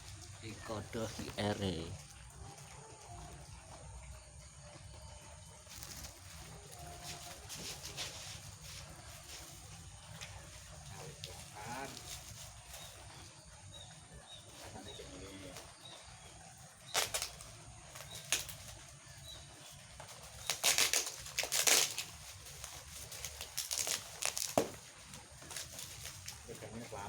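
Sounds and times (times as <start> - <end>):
plastic packaging crinkling: 20.4 - 26.8.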